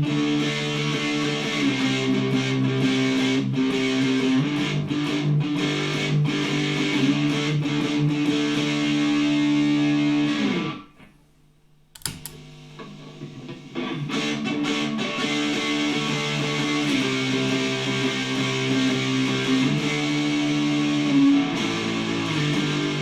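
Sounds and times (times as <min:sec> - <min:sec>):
distorted electric guitar chords: 0:00.0 - 0:10.9, 0:12.0 - 0:23.0.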